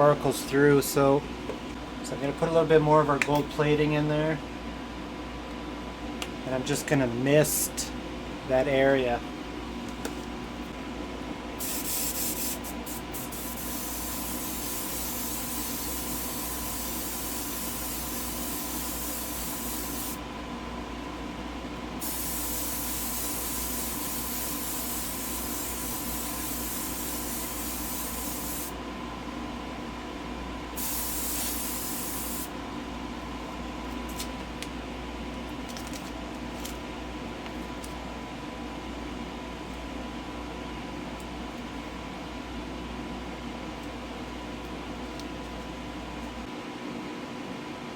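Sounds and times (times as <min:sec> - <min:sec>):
airbrush hissing: 0:11.6 - 0:20.2, 0:22.0 - 0:28.8, 0:30.8 - 0:32.5.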